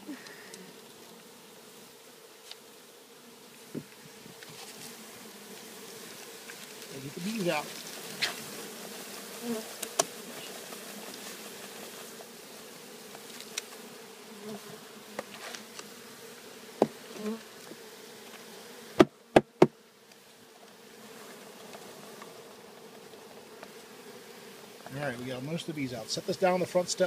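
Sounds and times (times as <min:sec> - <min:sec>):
bees buzzing: 0:00.0 - 0:27.0
sharp knocks on bee package: 0:19.0 - 0:19.8.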